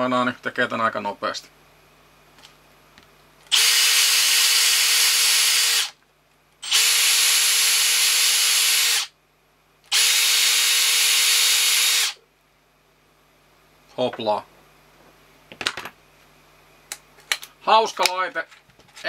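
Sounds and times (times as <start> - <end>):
cordless drill spinning: 3.5 - 6.0, 6.6 - 9.1, 9.9 - 12.2.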